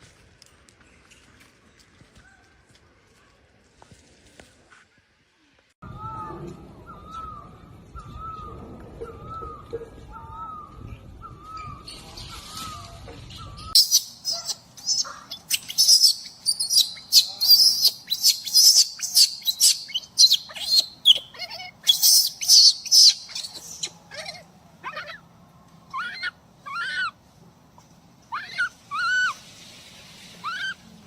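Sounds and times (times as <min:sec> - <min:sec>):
many birds chirping: 0:06.9 - 0:25.2.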